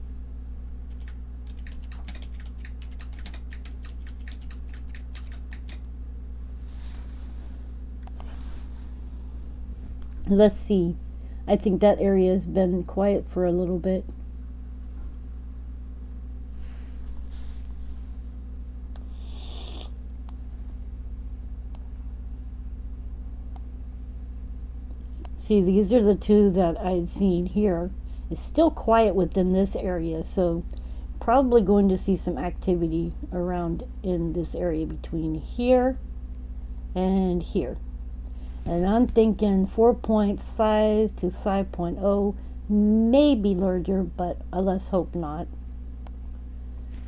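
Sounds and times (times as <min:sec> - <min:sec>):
low electrical hum: 0:00.0 - 0:47.0
keyboard typing clicks: 0:00.9 - 0:05.9.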